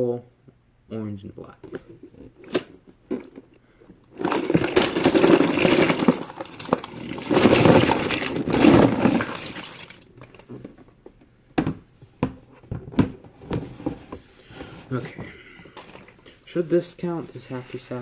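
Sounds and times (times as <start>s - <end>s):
small plastic toys clattering: 4.1s - 10.8s.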